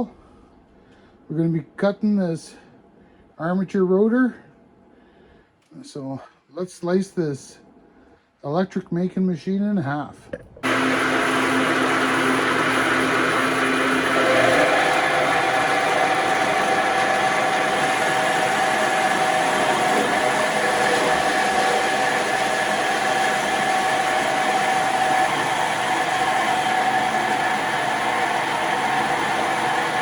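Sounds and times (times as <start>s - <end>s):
band saw cutting metal: 10.6s - 30.0s.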